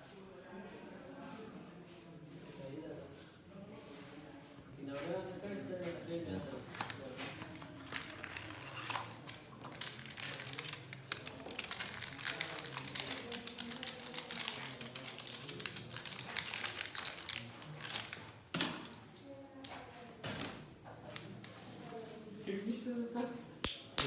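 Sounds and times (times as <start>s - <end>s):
faint voices: 3.4s - 23.6s
packaging crinkling and clicking: 6.6s - 19.0s.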